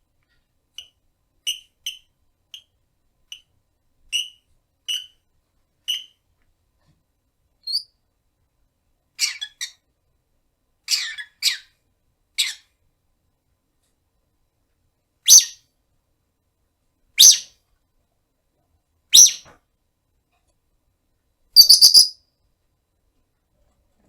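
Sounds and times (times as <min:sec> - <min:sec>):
lovebird chirping and squawking: 0:01.4 - 0:02.6, 0:04.1 - 0:05.2, 0:05.9 - 0:06.2, 0:09.2 - 0:09.8, 0:10.9 - 0:11.7, 0:12.4 - 0:12.7, 0:15.3 - 0:15.6, 0:17.2 - 0:17.6, 0:19.1 - 0:19.5, 0:21.6 - 0:22.2.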